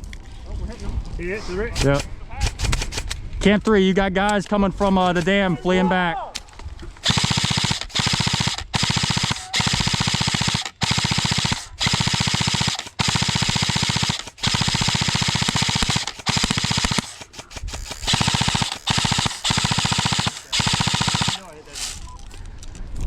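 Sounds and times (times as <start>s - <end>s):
airsoft machine gun bursts: 7.0s - 22.2s.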